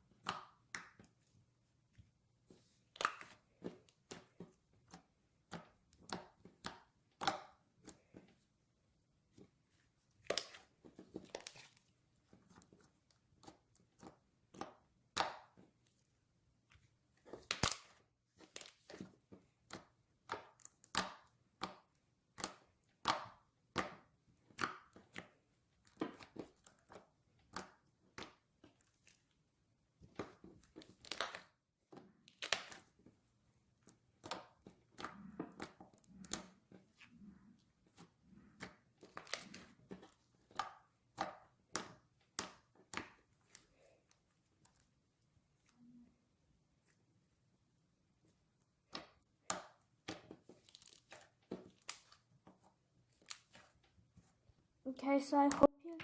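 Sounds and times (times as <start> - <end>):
slime squished by hand: 30.2 - 31.6.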